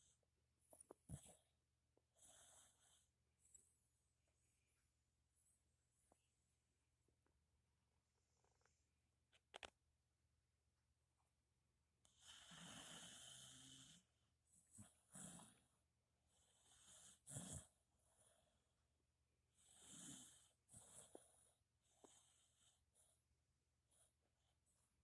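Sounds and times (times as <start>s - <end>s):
dog snoring: 2.1s - 3.0s, 12.1s - 15.7s, 16.3s - 18.4s, 19.6s - 22.8s.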